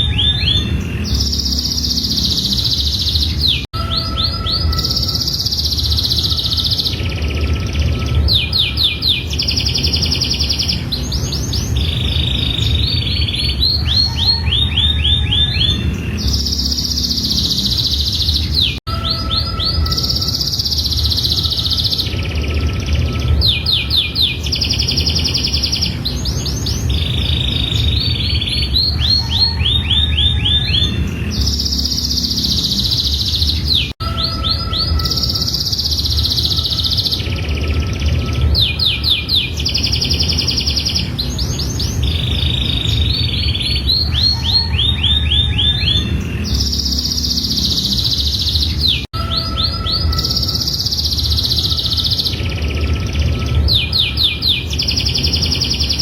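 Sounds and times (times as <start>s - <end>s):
steady low hum: 0.0s - 18.8s
canary singing: 0.0s - 56.0s.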